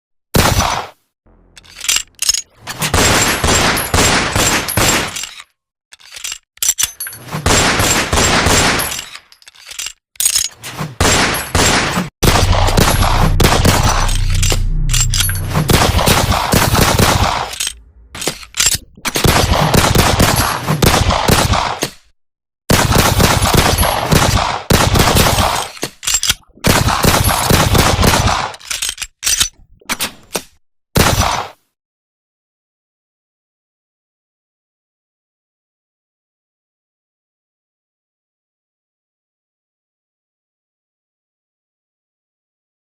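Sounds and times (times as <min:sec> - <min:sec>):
rapid gunfire bursts: 0:19.1 - 0:21.8, 0:26.6 - 0:28.5.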